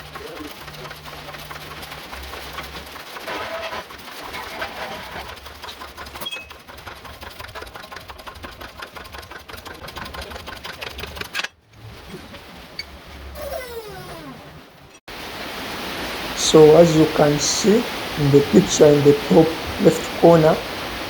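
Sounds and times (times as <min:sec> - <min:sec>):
hydraulic jack mechanical clatter: 0:00.0 - 0:11.6.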